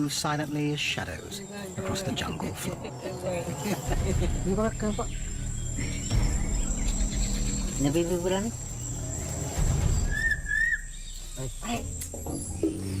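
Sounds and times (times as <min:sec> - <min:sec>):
insects trilling: 0:00.0 - 0:13.0
warbling whistle: 0:09.3 - 0:11.8.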